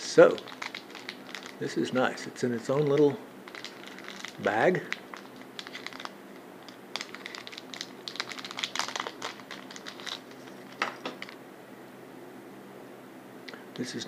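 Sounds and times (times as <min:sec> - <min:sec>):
plastic bag crinkling: 0:00.1 - 0:01.8, 0:02.7 - 0:11.4.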